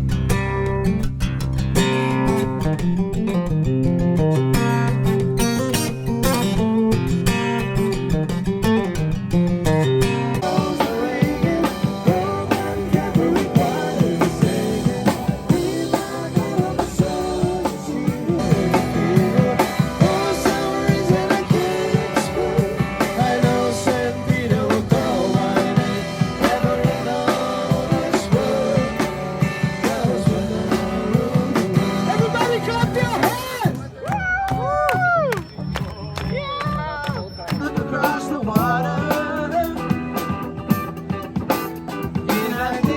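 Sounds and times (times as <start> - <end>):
guitar: 0.0 - 42.9
drum kit beat: 10.2 - 35.2, 37.0 - 42.9
person singing: 10.4 - 32.2, 37.6 - 40.4, 42.2 - 42.9.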